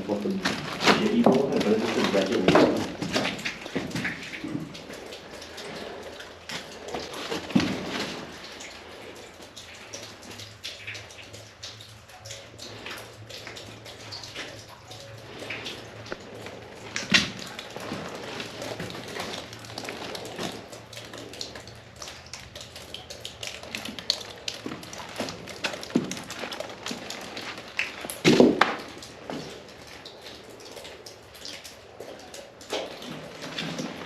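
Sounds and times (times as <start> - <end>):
water dripping: 0.0 - 34.0
loud splashes or knocks: 24.7 - 29.5.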